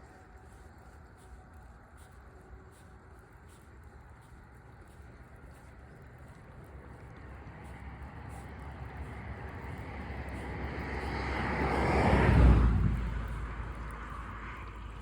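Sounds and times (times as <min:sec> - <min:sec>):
vehicle passing by: 0:07.5 - 0:15.0.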